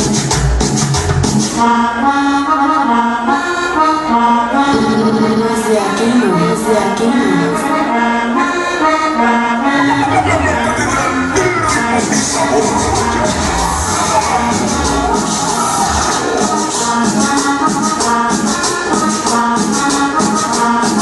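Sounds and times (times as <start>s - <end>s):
latin dance music: 0.0s - 21.0s
accordion melody: 1.5s - 21.0s
heavy bass beat: 4.8s - 5.6s, 9.8s - 21.0s.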